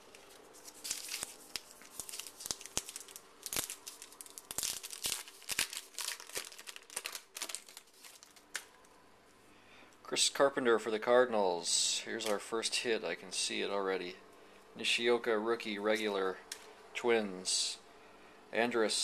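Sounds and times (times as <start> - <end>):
wrapper tearing and crinkling: 0.0 - 8.8.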